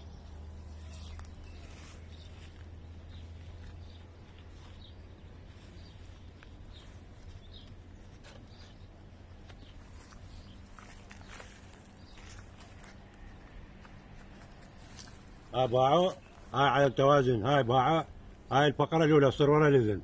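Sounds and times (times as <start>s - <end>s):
faint bird chirps: 0.0s - 12.4s
steady low hum: 0.0s - 20.0s.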